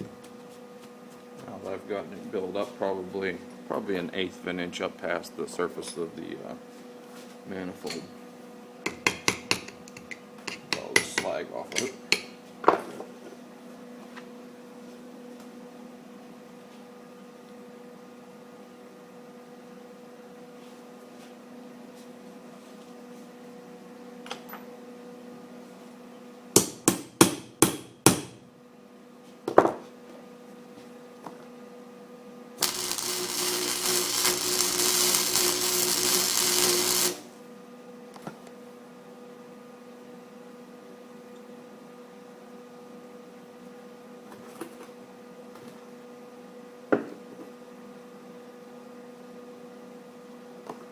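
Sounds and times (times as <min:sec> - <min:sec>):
welding arc crackling: 0:32.6 - 0:37.4
electrical hum: 0:32.6 - 0:37.6.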